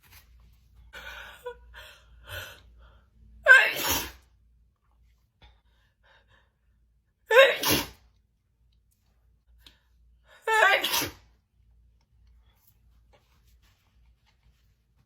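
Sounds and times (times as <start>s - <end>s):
woman sneezing: 3.4s - 4.2s, 7.3s - 8.0s, 10.5s - 11.3s.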